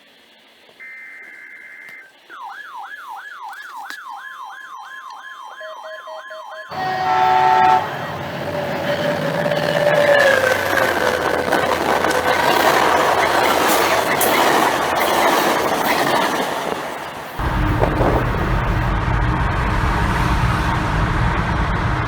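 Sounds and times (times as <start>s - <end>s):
noisy rush with steady tones: 0.0s - 15.9s, 16.8s - 22.0s
electronic siren sweeping: 0.8s - 15.2s
buzzy digital data warble: 0.8s - 15.4s.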